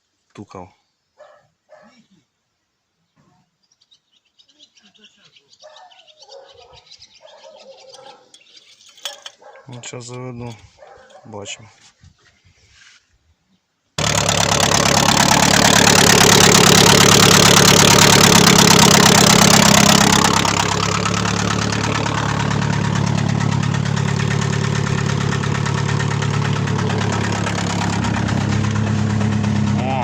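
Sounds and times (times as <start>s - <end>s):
car engine knocking: 14.0s - 30.0s.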